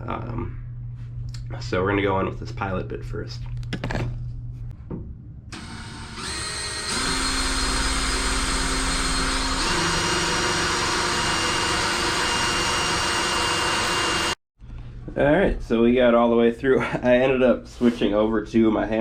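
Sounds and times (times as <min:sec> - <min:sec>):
power drill whirring: 0:05.5 - 0:14.4.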